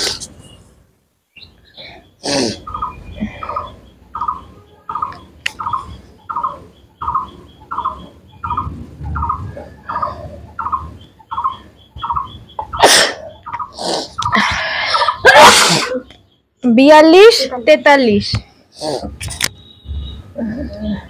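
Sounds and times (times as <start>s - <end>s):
small bird chirping: 0.0s - 15.3s, 15.9s - 21.0s
person sneezing: 12.8s - 14.1s, 15.3s - 16.0s.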